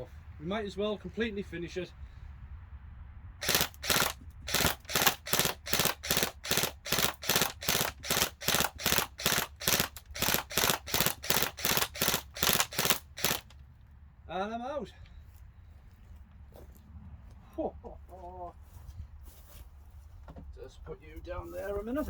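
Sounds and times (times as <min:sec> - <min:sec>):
airsoft gun firing: 0:03.4 - 0:13.6.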